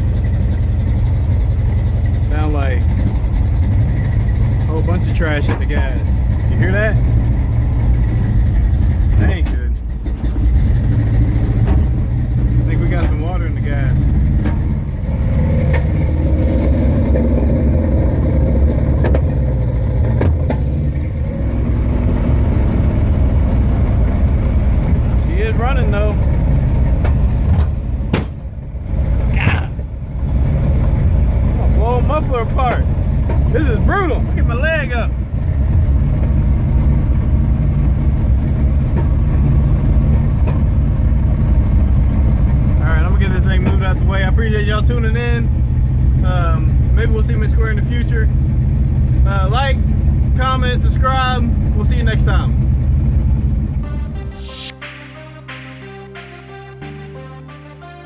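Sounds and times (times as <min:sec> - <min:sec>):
car engine running rough: 0:00.0 - 0:54.7
exhaust pops: 0:02.3 - 0:21.1, 0:24.4 - 0:29.9, 0:30.8 - 0:45.8.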